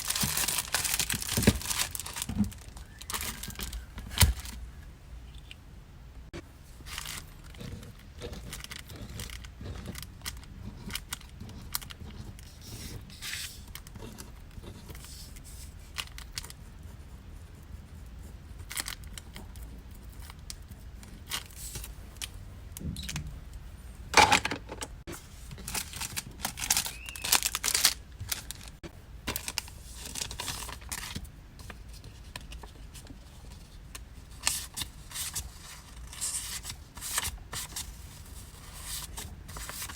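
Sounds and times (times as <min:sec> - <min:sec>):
packaging rustling and crinkling: 0:00.0 - 0:04.6, 0:25.1 - 0:33.6, 0:34.3 - 0:39.9.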